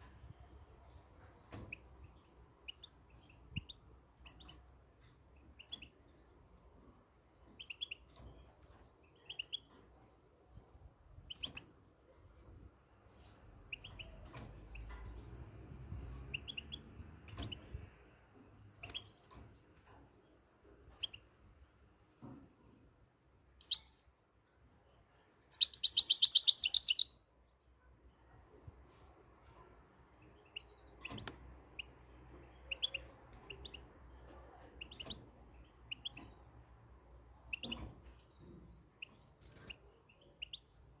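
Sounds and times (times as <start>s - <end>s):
goldfinch singing: 23.6s - 23.9s, 25.5s - 27.2s.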